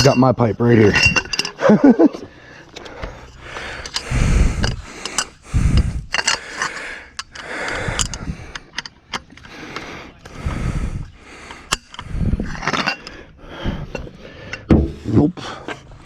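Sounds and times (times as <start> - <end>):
metal clicks and clanks of breaker bar: 0.9 - 2.0
low rumbling: 0.9 - 6.5, 11.9 - 15.3.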